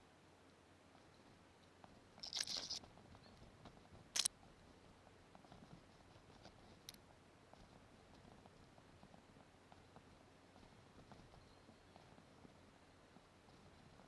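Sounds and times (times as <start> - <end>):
twigs and leaves crunching: 2.2 - 2.8.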